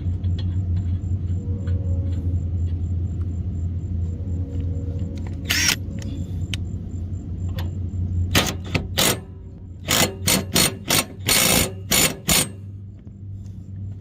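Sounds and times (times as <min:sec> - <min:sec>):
steady low hum: 0:00.0 - 0:14.0
impact wrench bursts: 0:08.3 - 0:12.7.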